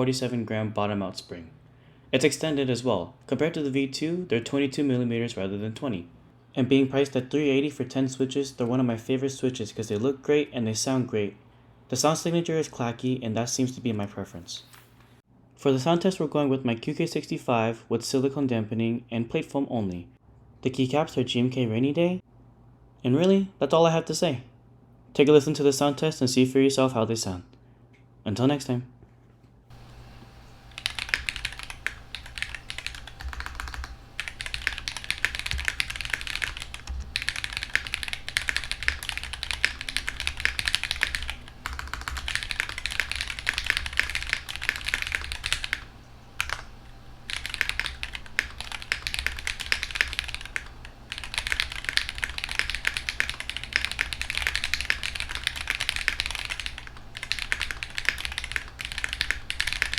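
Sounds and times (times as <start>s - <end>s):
mechanical keyboard typing: 30.7s - 46.7s, 47.3s - 59.9s.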